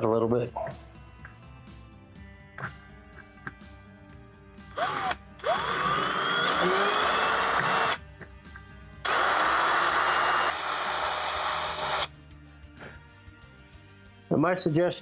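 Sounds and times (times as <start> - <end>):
power tool cutting steel: 4.7 - 8.0, 9.1 - 12.1.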